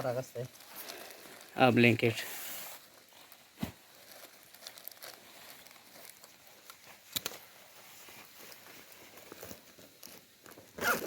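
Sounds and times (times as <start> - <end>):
faint rustling and crinkling: 0.0 - 11.0.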